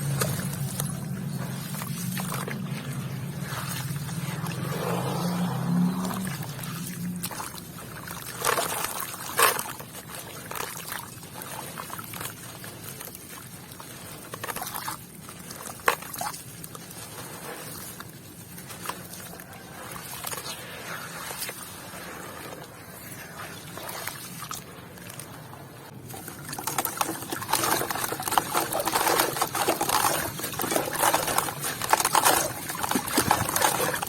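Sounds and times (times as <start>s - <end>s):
low hum: 0.0s - 7.6s
water pouring and trickling: 0.0s - 34.0s.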